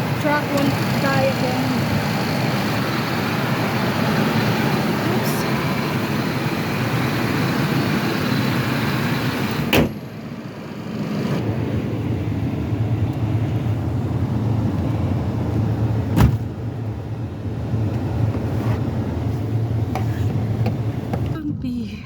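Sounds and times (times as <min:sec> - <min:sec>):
truck engine running: 0:00.0 - 0:22.0
car door shutting: 0:09.5 - 0:10.1, 0:16.1 - 0:16.5.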